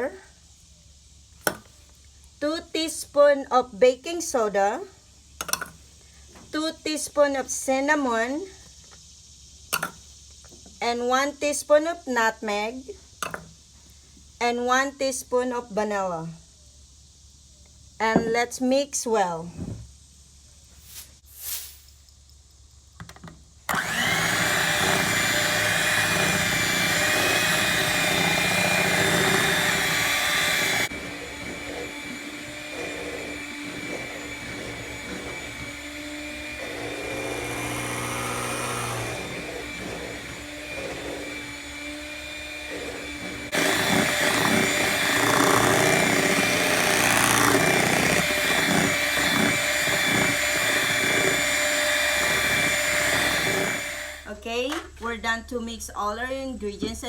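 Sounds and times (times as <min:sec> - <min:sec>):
electric mixer motor whining: 0:23.7 - 0:54.3.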